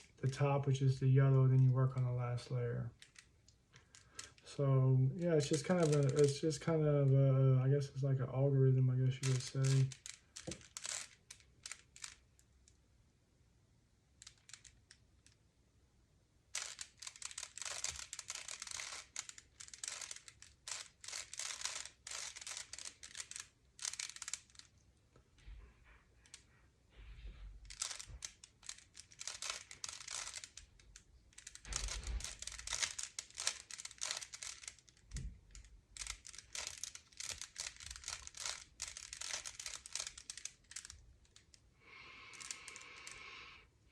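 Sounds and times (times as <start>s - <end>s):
puzzle cube clicking and rattling: 0.8s - 12.8s, 14.1s - 15.4s, 16.4s - 24.8s, 27.4s - 43.4s.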